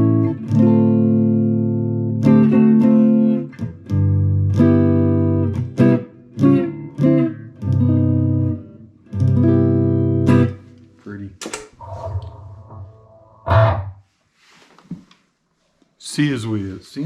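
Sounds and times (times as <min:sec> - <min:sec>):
electric guitar chords: 0:00.0 - 0:11.0, 0:11.8 - 0:14.0.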